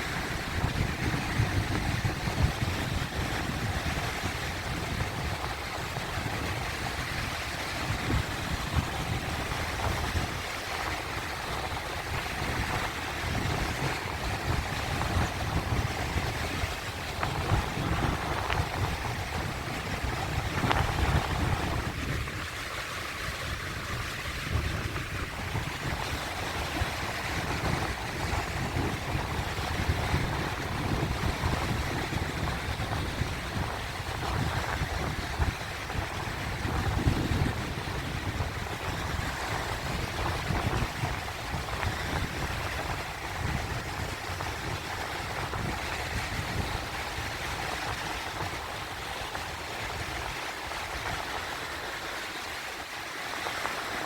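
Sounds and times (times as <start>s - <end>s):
sea waves breaking: 0.0s - 54.0s.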